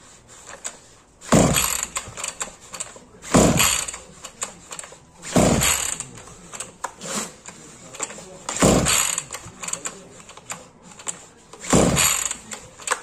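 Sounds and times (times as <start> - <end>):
trimmer pull-starter whirring rattle: 1.3 - 6.7, 8.0 - 9.9, 11.0 - 13.0.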